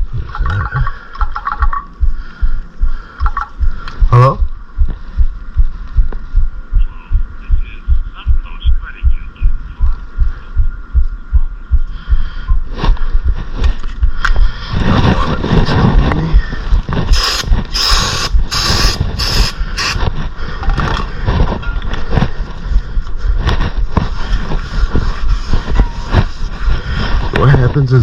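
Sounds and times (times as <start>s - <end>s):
low thumps: 1.5s - 20.4s
aerosol spray hissing: 17.1s - 20.0s.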